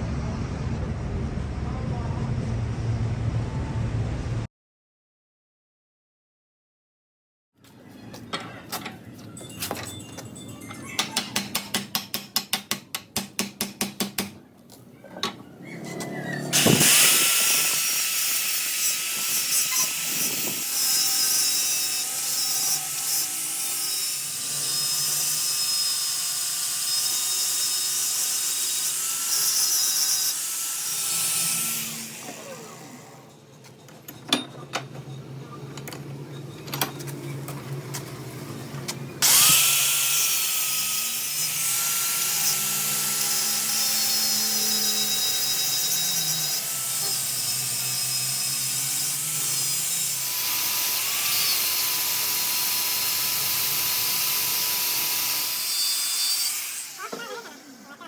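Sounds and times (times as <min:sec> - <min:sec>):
power tool high whine: 0:16.4 - 0:33.4, 0:39.2 - 0:58.0.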